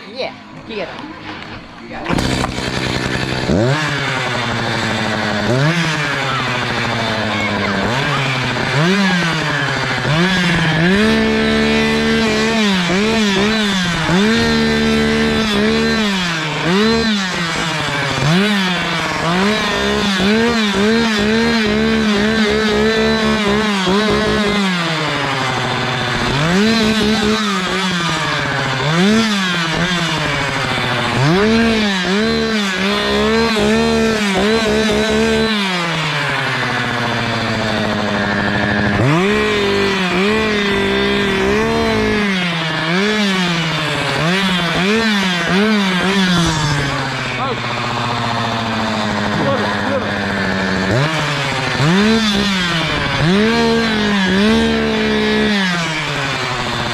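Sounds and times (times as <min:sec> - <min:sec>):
chainsaw revving: 0:00.0 - 0:56.9.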